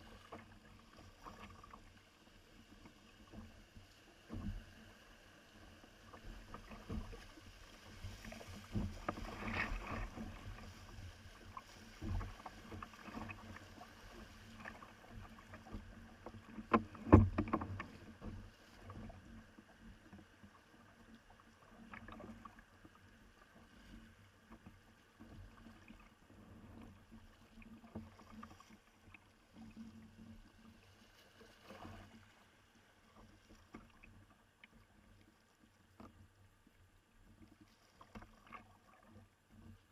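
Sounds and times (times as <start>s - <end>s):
paddle splashes: 0.0s - 36.4s, 37.2s - 39.9s
water sloshing: 6.1s - 19.2s
knocks against kayak hull: 16.6s - 18.0s.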